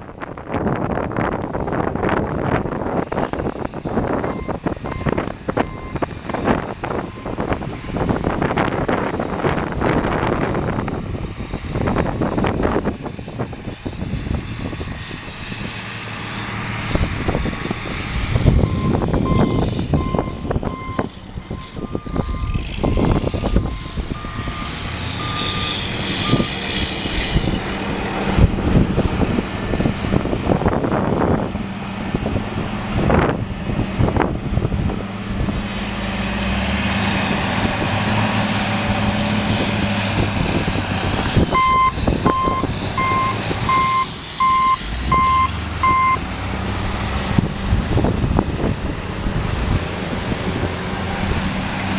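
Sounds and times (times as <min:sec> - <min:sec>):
tractor engine running: 0:00.0 - 0:51.9
reversing alarm beeping: 0:04.2 - 0:06.0, 0:18.6 - 0:26.6, 0:41.5 - 0:46.2.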